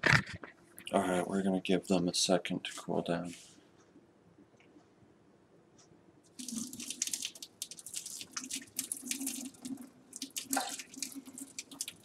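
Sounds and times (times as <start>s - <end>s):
water splashing into sink: 6.4s - 12.0s.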